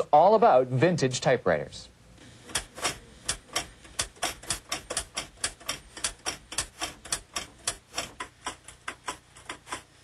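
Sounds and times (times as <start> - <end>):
typewriter key strikes: 2.5 - 9.8.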